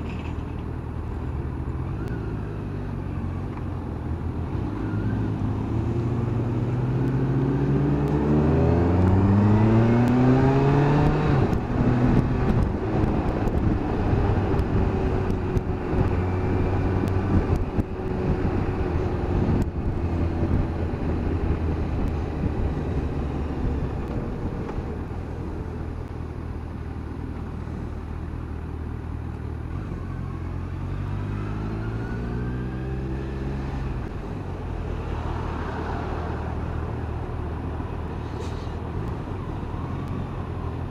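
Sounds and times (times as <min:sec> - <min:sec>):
motorcycle engine accelerating: 0:04.8 - 0:25.5
wind rush: 0:08.6 - 0:25.7.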